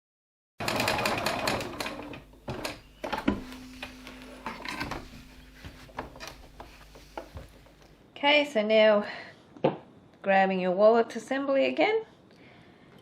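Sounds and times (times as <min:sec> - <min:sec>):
low steady hum: 0:01.8 - 0:09.3
fabric rustling: 0:02.8 - 0:08.0.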